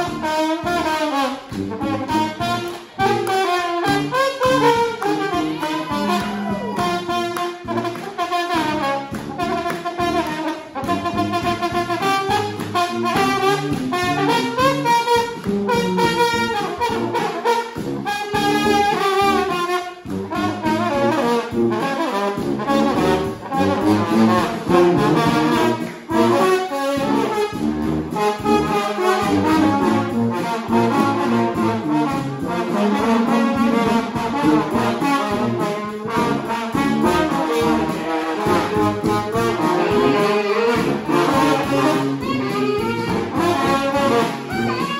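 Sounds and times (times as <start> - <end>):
horns playing a tune: 0.0 - 44.9
steady drum beat: 0.0 - 44.9.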